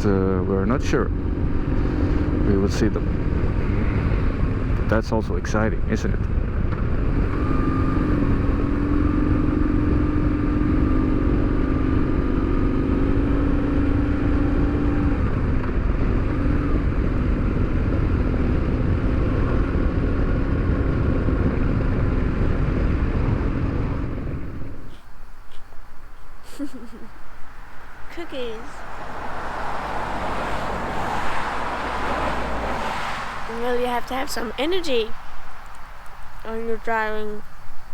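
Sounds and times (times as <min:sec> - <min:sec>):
motorcycle engine cruising: 0:00.0 - 0:37.9
road rumble: 0:00.0 - 0:37.9
wind rush: 0:15.1 - 0:26.4, 0:27.2 - 0:36.8.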